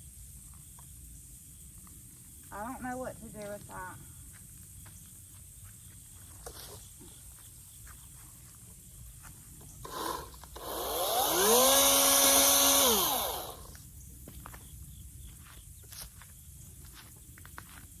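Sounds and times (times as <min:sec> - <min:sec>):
electric chainsaw motor whine: 0:09.8 - 0:13.8.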